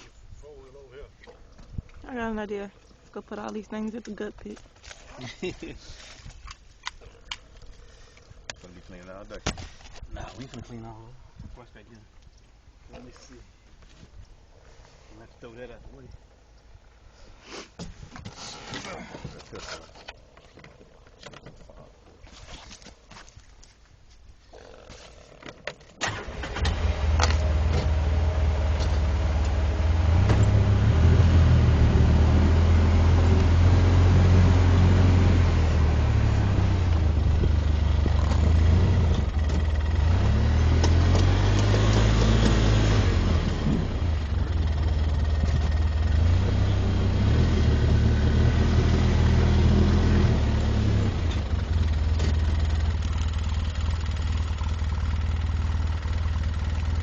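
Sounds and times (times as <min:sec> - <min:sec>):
atv engine revving: 0:26.0 - 0:57.0.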